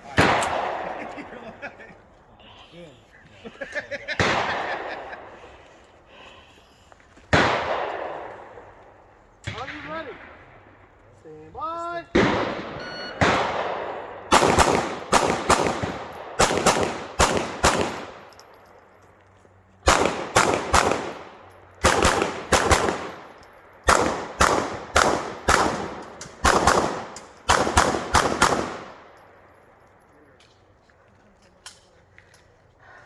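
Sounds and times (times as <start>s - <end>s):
pistol shots echoing: 0.1s - 1.1s, 7.3s - 8.7s, 12.1s - 18.4s, 19.8s - 29.5s.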